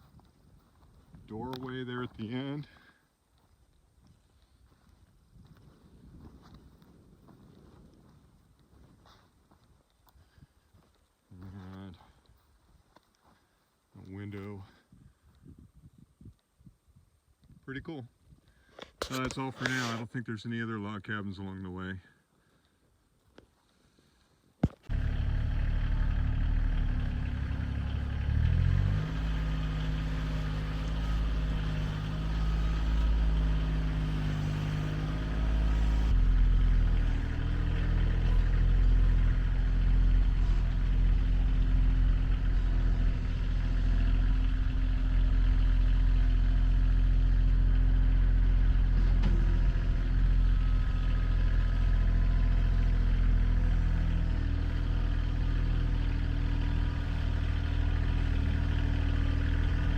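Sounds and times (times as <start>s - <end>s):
vehicle engine running: 24.9s - 59.9s.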